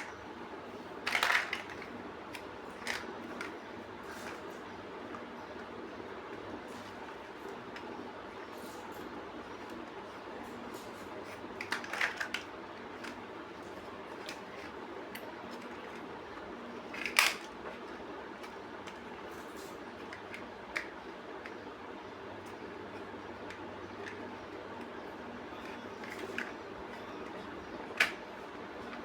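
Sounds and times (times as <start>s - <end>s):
plastic bricks clicking together: 1.0s - 3.5s, 11.6s - 13.2s, 16.9s - 17.6s.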